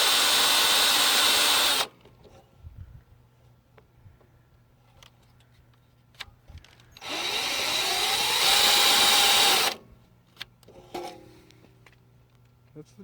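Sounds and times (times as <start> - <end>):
power drill motor whine: 0.0 - 1.9, 7.0 - 9.8.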